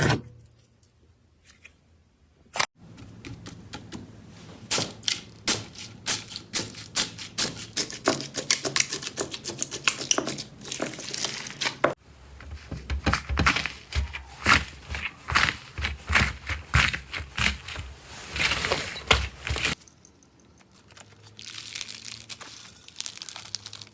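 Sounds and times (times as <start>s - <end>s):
dull slime presses: 12.4s - 18.0s
slime crackling and popping: 21.3s - 23.9s.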